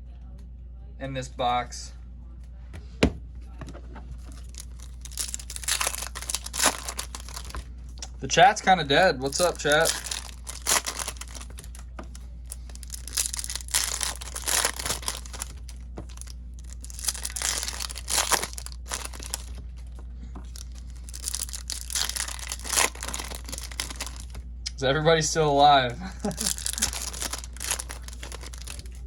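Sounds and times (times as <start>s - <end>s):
cards being handled: 4.1s - 7.6s, 9.2s - 24.4s, 26.3s - 29.0s
foil wrappers tearing and crinkling: 4.3s - 7.6s, 9.0s - 11.8s, 12.5s - 19.8s, 20.5s - 24.4s, 26.2s - 29.0s.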